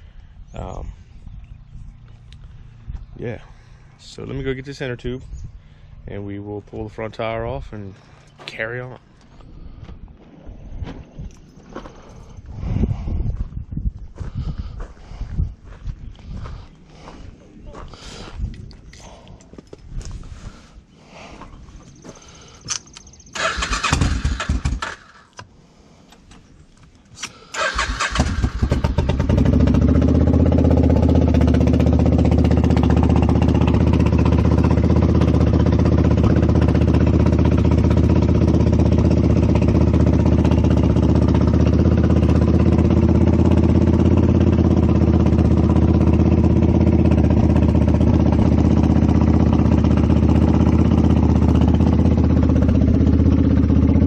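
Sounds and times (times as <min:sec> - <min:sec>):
motorcycle engine cranking and starting: 0:22.6 - 0:54.0
motorcycle engine idling: 0:27.6 - 0:54.0.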